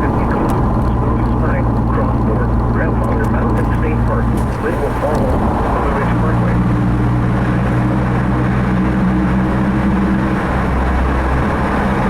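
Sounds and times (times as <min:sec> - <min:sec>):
car engine drone: 0:00.0 - 0:12.0
road noise inside car: 0:00.0 - 0:12.0.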